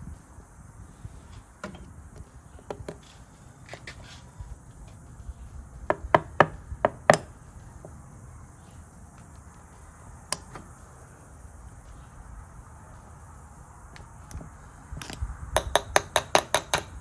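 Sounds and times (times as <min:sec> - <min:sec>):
metal parts tapping on surface: 0:01.6 - 0:04.1, 0:05.9 - 0:07.9, 0:14.0 - 0:17.0.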